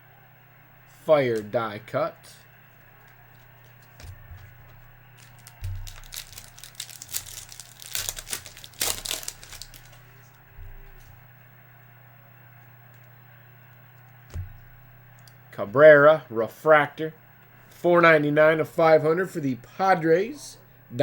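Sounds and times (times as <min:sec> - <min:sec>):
steady low hum: 0:00.0 - 0:21.0
foil wrapper crinkling: 0:02.7 - 0:11.0.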